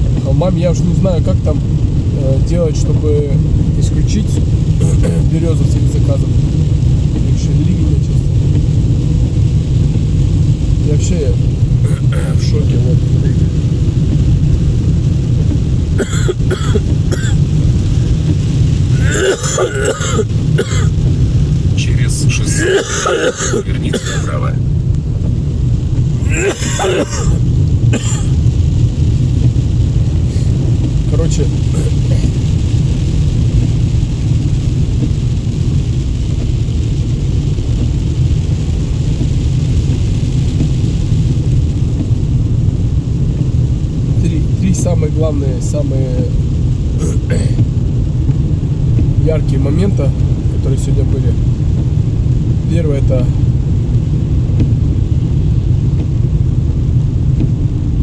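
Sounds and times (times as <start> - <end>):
road and rain noise in car: 0.0 - 58.0
man coughing: 4.8 - 5.3, 11.9 - 12.5, 16.0 - 17.4, 18.9 - 20.9, 22.4 - 24.4, 26.2 - 28.4, 31.7 - 32.3, 47.0 - 47.6.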